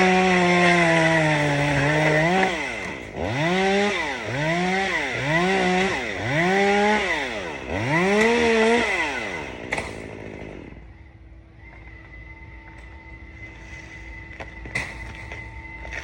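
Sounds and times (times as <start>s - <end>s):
chainsaw engine revving: 0.0s - 10.9s.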